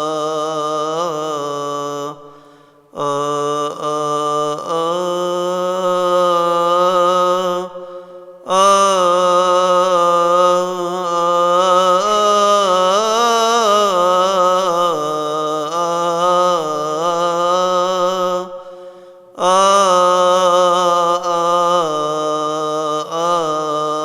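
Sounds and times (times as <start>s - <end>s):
man chanting unaccompanied: 0.0s - 24.0s.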